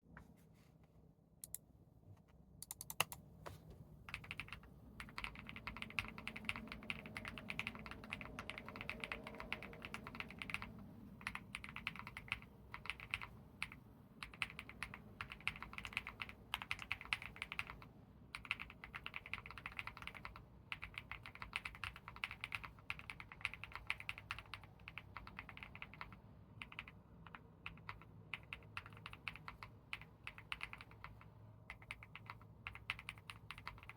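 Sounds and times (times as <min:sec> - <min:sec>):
mechanical keyboard typing: 0:02.6 - 0:03.3, 0:04.1 - 0:33.9.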